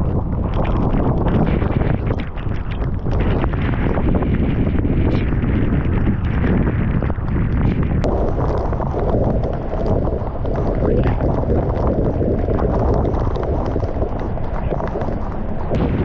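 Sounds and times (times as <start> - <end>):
wind: 0.0 - 16.0
road noise: 8.0 - 16.0
heavy rain on car: 8.1 - 16.0.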